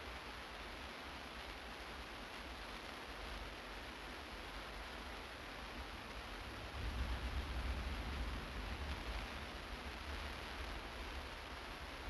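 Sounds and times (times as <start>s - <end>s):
rain falling: 2.8s - 12.0s.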